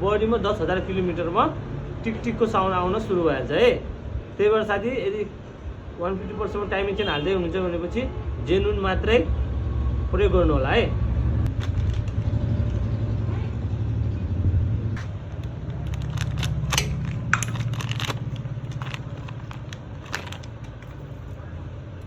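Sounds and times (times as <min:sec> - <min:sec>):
metallic clicks and clanks: 0:15.3 - 0:21.0.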